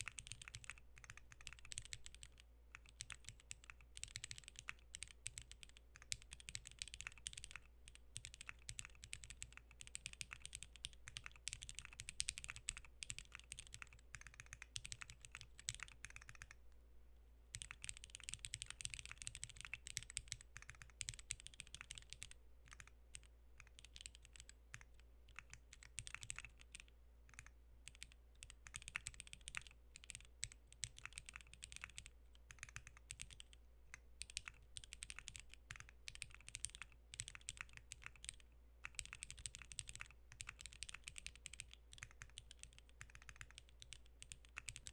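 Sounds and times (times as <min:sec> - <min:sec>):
mechanical keyboard typing: 0:00.0 - 0:16.6, 0:17.5 - 0:44.9.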